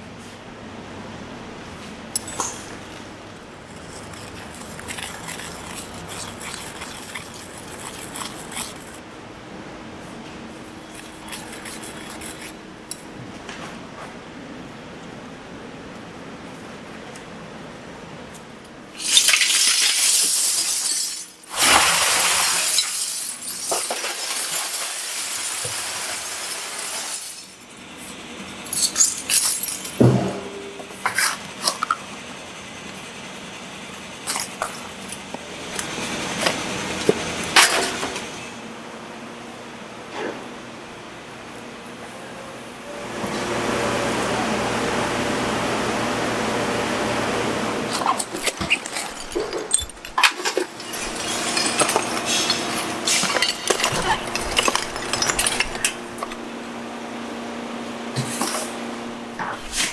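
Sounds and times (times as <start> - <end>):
glass clattering and crashing: 19.0 - 27.6, 28.7 - 30.7, 47.9 - 56.5
factory background noise: 41.8 - 59.9
glass clinking: 48.1 - 56.4.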